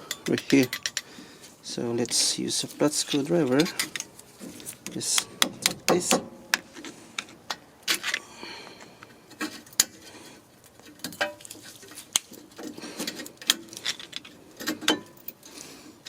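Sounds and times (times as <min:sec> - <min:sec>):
screwdriver scraping on metal: 0:00.0 - 0:01.1.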